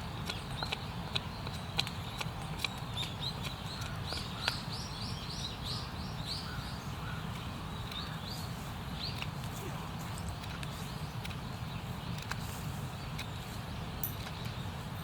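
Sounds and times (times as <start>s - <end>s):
small bird chirping: 0.2s - 14.9s
sharp clicks: 9.0s - 13.4s.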